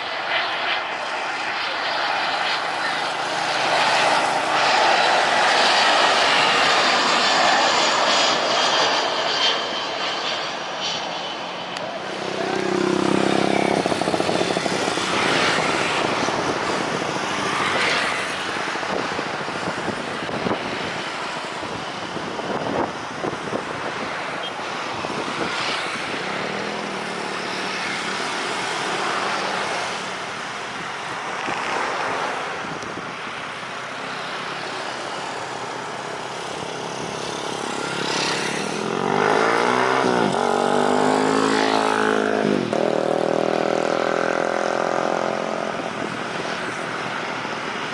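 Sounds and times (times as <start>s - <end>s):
engine drone passing: 0.0s - 23.1s, 34.1s - 47.9s
aircraft noise: 0.0s - 47.9s
road traffic rushing: 0.0s - 47.9s.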